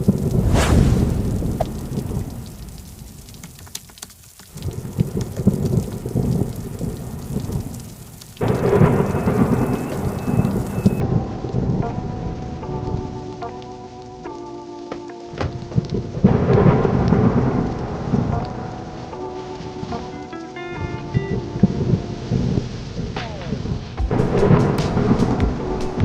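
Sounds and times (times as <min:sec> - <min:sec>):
thunder rumbling: 0:00.0 - 0:13.2, 0:16.1 - 0:19.0, 0:21.6 - 0:26.0
steady rain: 0:00.0 - 0:26.0.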